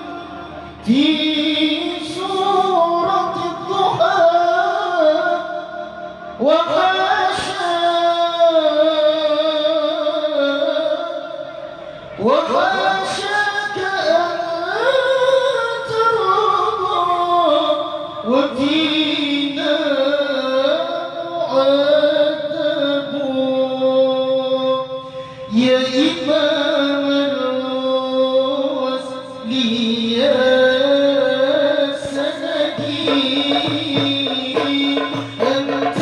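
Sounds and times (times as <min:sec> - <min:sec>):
person singing ornamented phrases: 0:25.6 - 0:36.0.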